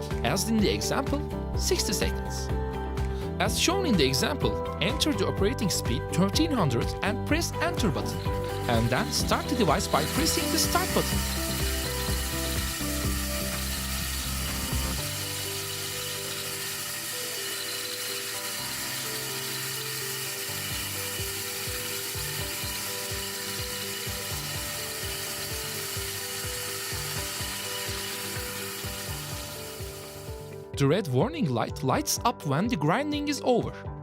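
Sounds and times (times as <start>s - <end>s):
disc mill rattling: 7.4s - 30.6s.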